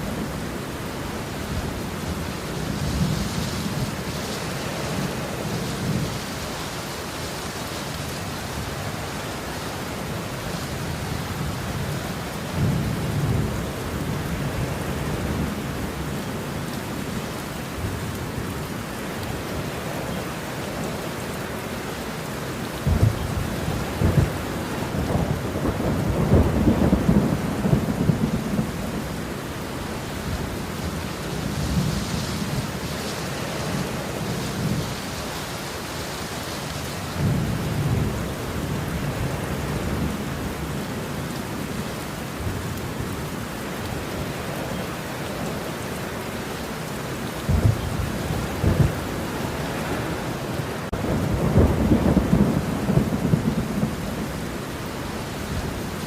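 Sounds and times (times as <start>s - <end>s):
steady rain falling: 0.0s - 56.0s
thunder rumbling: 22.8s - 35.2s, 37.1s - 43.2s, 47.4s - 56.0s.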